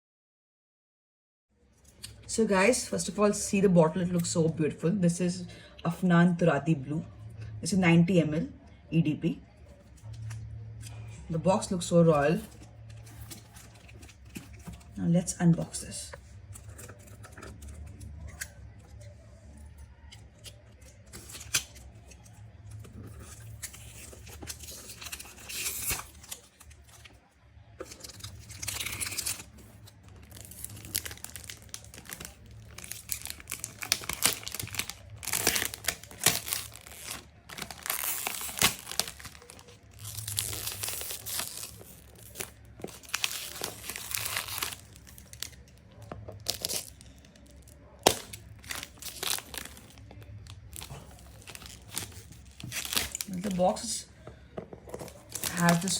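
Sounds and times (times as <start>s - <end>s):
packaging being torn open: 20.1s - 22.5s, 23.1s - 27.2s, 27.8s - 53.4s.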